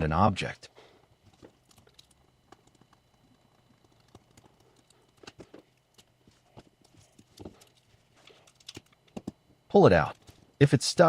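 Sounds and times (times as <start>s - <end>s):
small tools clicking on phone parts: 6.8s - 9.3s.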